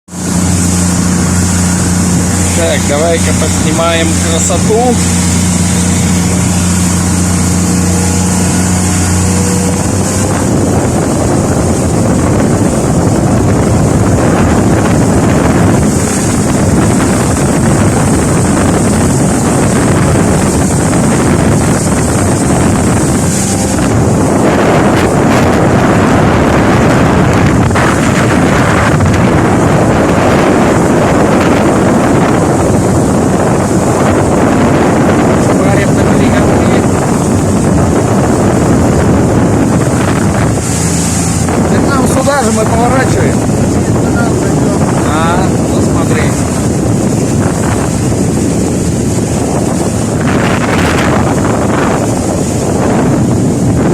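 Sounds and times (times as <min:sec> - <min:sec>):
motorboat engine hum: 0:00.0 - 0:53.9
wind on microphone: 0:00.0 - 0:53.9.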